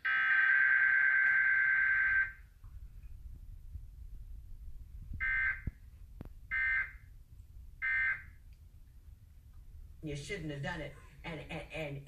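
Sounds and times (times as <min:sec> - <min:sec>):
low hum: 0:01.2 - 0:11.6.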